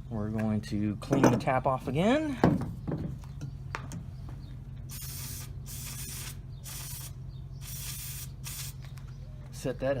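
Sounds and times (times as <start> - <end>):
spray hissing: 4.9 - 8.8.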